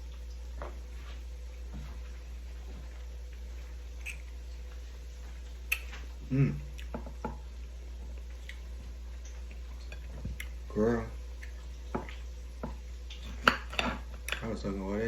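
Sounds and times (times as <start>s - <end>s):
steady low hum: 0.0s - 15.0s
wet mouth eating sounds: 3.3s - 4.7s, 5.5s - 7.2s, 8.0s - 10.7s, 11.3s - 12.3s
person humming mm: 6.2s - 6.7s.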